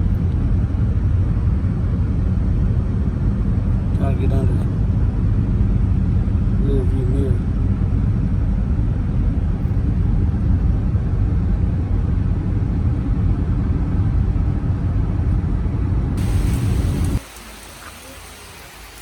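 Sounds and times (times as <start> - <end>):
car road and engine rumble: 0.0 - 19.0
light rain hiss: 16.2 - 19.0.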